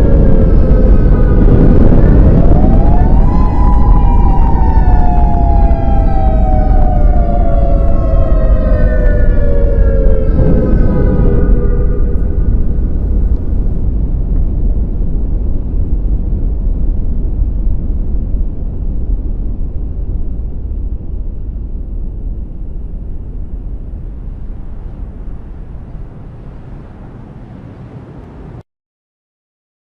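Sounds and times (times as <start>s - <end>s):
deep rumbling impact: 0.0s - 28.6s.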